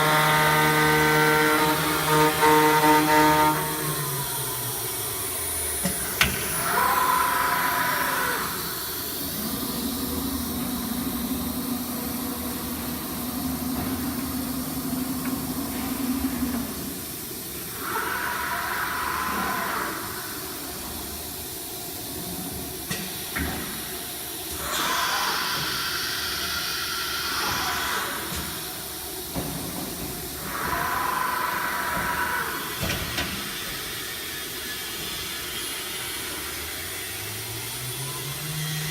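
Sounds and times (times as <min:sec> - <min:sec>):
router loud hissing: 0:00.0 - 0:13.5
steady low hum: 0:00.0 - 0:17.9.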